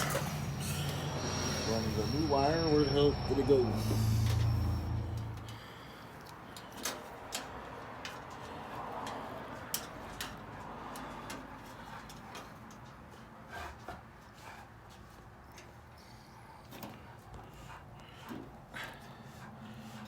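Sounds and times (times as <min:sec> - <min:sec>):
small tools clicking and tapping: 0:06.2 - 0:13.1.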